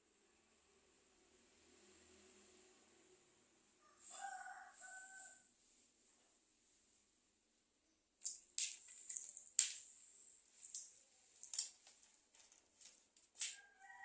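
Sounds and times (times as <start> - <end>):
cat toy jingling and rattling: 8.2 - 14.0.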